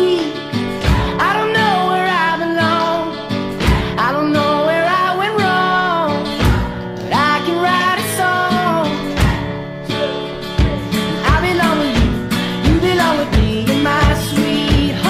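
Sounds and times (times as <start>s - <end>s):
guitar: 0.0s - 15.0s
person singing: 0.0s - 15.0s
steady beat: 0.8s - 1.3s, 3.6s - 4.0s, 6.4s - 6.8s, 9.0s - 15.0s.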